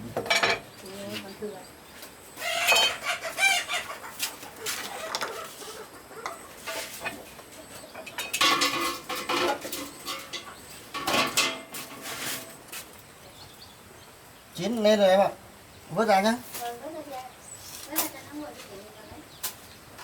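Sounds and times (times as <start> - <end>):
pots and utensils clattering: 0.0 - 0.7, 2.5 - 3.2, 4.8 - 5.6, 6.2 - 12.7
chicken clucking: 2.4 - 12.0.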